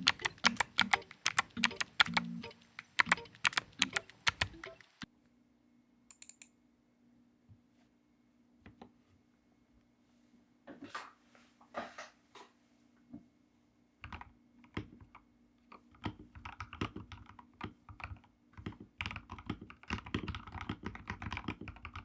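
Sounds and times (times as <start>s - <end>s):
mechanical keyboard typing: 0.0s - 4.9s, 15.9s - 22.0s.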